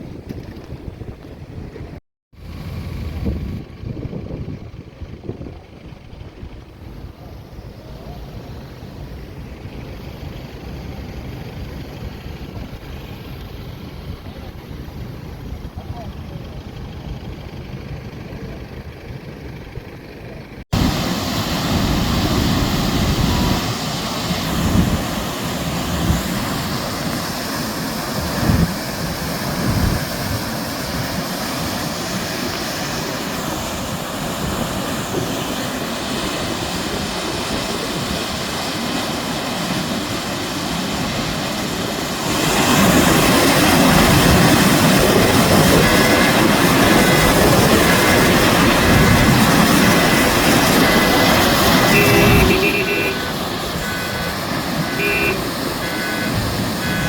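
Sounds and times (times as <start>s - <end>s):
low rumbles: 0.0s - 27.1s.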